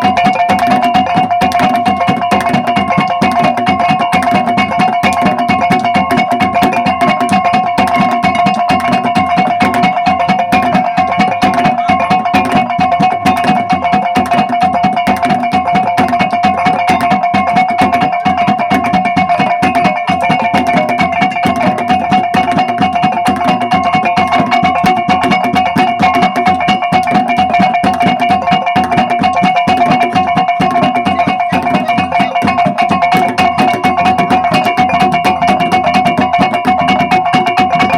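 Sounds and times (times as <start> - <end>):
rapid drum beat: 0.0 - 37.9.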